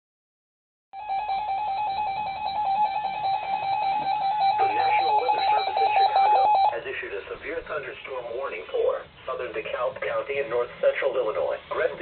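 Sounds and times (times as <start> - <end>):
pulsing alarm tone: 1.0 - 6.8
broadcast voice speaking: 4.6 - 12.0.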